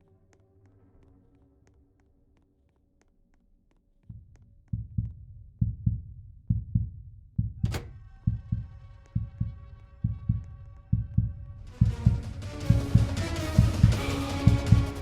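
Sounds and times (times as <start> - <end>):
heartbeat double thumps: 4.1 - 15.0.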